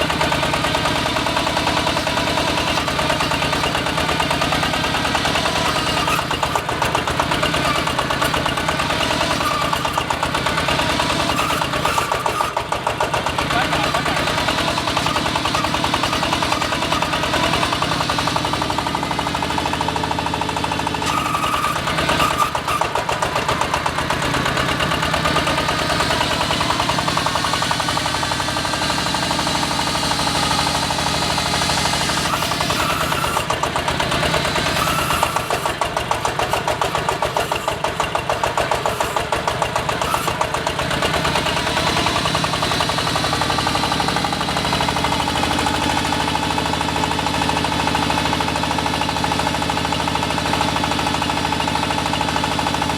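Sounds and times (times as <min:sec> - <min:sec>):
diesel engine knocking: 0:00.0 - 0:52.9.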